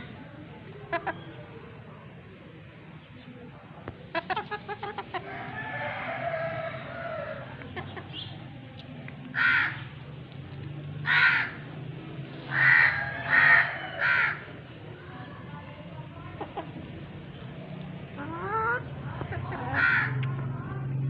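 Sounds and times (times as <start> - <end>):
harsh bird calls: 9.3 - 10.0, 12.4 - 14.8.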